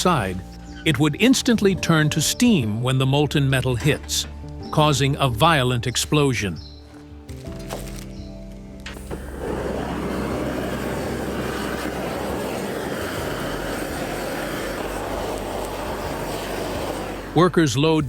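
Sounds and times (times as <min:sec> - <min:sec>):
charcoal fire rushing: 0:08.9 - 0:17.8.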